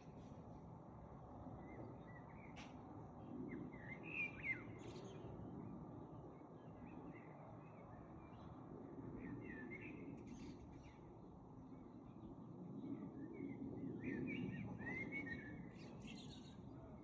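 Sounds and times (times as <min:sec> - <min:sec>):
songbirds chirping: 0:09.2 - 0:17.0.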